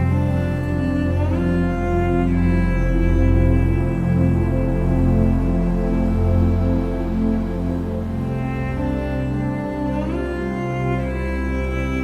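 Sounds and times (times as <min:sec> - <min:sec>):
sustained music chords: 0:00.0 - 0:12.0.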